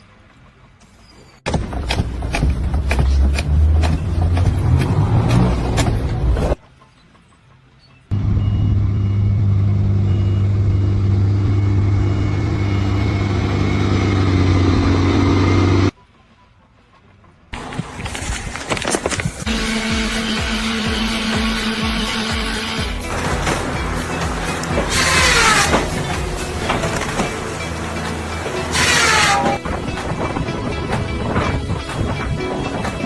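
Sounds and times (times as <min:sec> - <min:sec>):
engine drone: 0:08.1 - 0:16.0, 0:17.6 - 0:31.2
faint high beep: 0:08.3 - 0:13.2.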